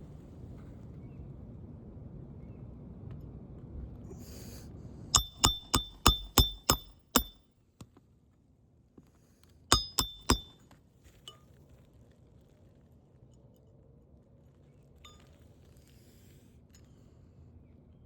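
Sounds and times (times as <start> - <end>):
hammer striking metal tool: 5.2 - 7.4, 9.7 - 10.6.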